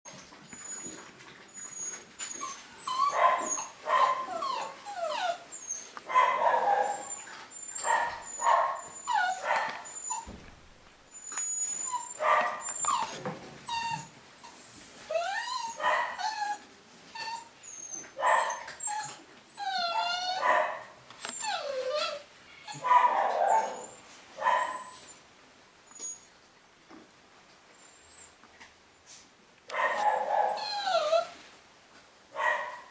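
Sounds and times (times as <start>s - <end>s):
puppies whining and yipping: 0.1s - 10.4s, 11.1s - 20.6s, 21.2s - 25.2s, 25.9s - 26.3s, 30.0s - 31.4s.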